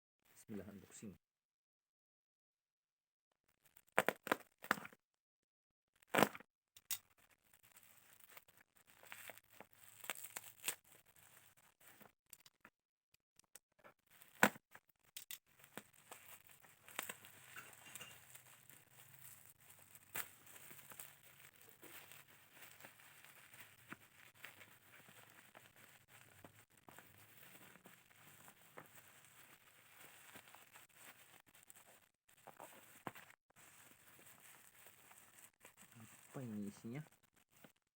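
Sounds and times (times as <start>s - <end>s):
packaging tearing and rustling: 7.1s - 12.1s, 15.5s - 36.5s.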